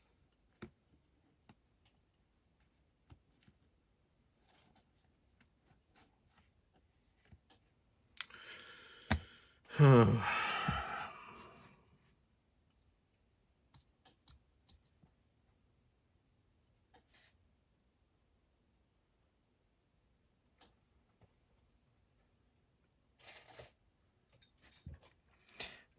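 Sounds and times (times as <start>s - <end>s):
person sighing: 8.2s - 11.8s.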